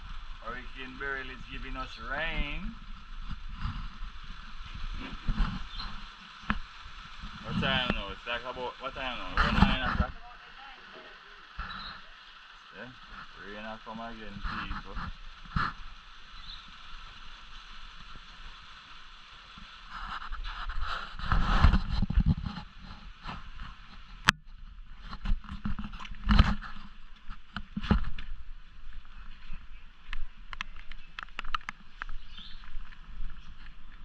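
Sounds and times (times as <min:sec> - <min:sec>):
rain falling: 0:00.0 - 0:34.0.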